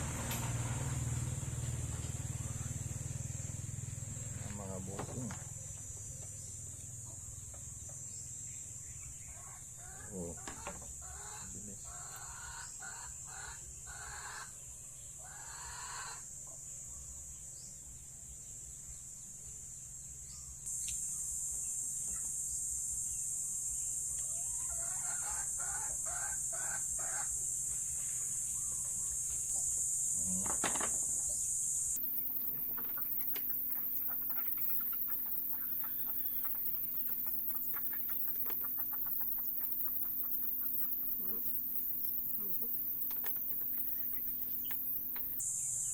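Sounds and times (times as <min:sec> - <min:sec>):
chickens clucking: 0:09.4 - 0:14.4, 0:24.2 - 0:27.3, 0:32.0 - 0:45.4.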